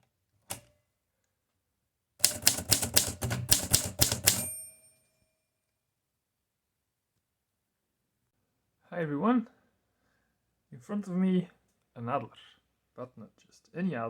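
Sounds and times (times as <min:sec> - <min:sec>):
typewriter keystrokes: 0:02.2 - 0:04.6
typewriter margin bell: 0:02.2 - 0:05.2.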